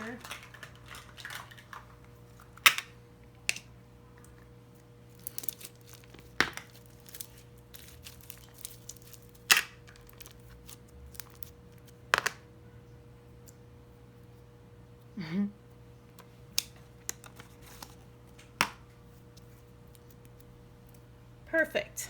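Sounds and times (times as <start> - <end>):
slime crackling: 5.1 - 11.6.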